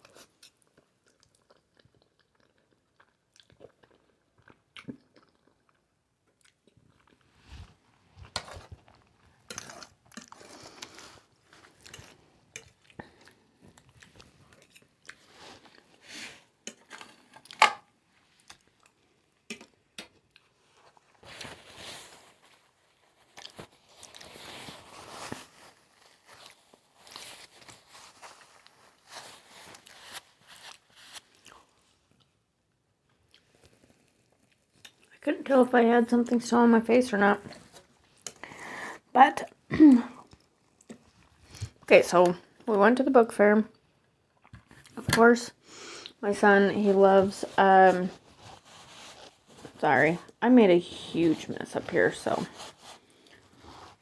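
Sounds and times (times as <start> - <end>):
person chewing spaghetti: 0.0 - 21.2, 22.3 - 24.4, 25.4 - 32.4, 33.0 - 35.2.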